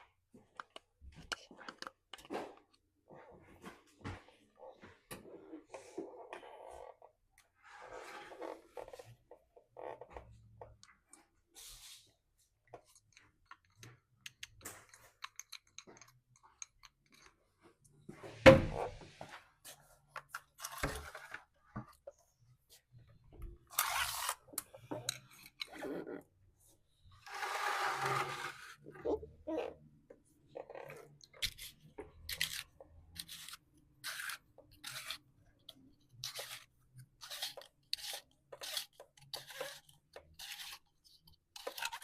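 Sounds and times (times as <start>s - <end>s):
tools clicking and knocking: 12.9s - 17.4s.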